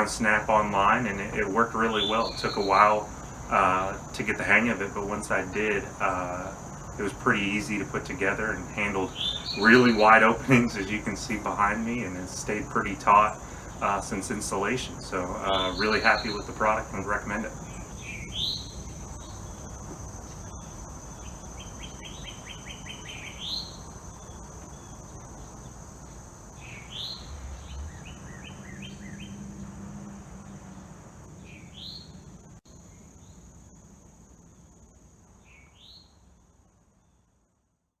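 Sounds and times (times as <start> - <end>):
chirping trills: 0.0 - 32.6
high-pitched insect drone: 0.0 - 36.0
bird rising call: 8.7 - 11.0, 26.6 - 32.2.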